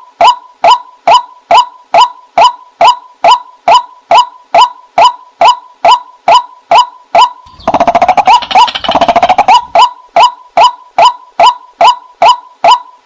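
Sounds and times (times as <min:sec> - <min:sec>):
rapid chattering bird calls: 0:07.4 - 0:09.8
waterhen kwak calls: 0:07.5 - 0:10.3.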